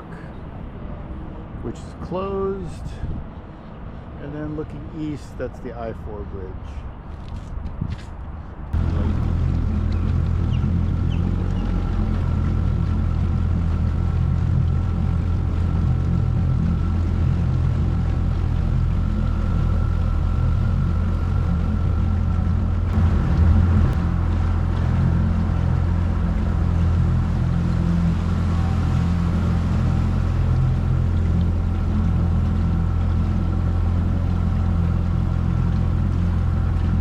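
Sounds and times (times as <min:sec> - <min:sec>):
outboard motor running: 0:08.7 - 0:37.0.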